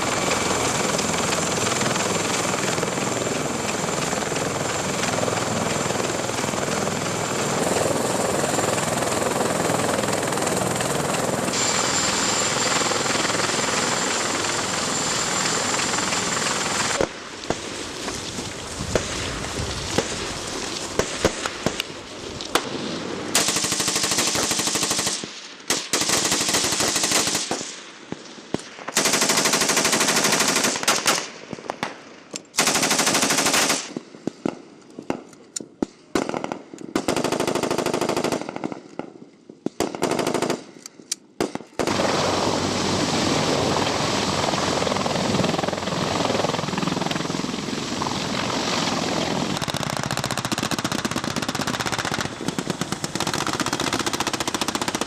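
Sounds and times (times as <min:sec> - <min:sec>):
automatic gunfire bursts: 0:23.4 - 0:27.7, 0:28.9 - 0:31.3, 0:32.6 - 0:34.0, 0:36.2 - 0:38.7, 0:39.8 - 0:40.8.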